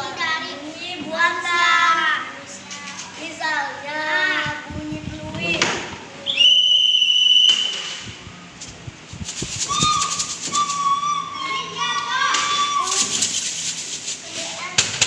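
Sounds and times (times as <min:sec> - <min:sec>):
high steady whistle tone: 0:06.2 - 0:08.1, 0:09.6 - 0:11.8
lower whistle-like tone: 0:06.2 - 0:08.1, 0:09.6 - 0:11.5
rapid shaken rattle: 0:08.6 - 0:15.0.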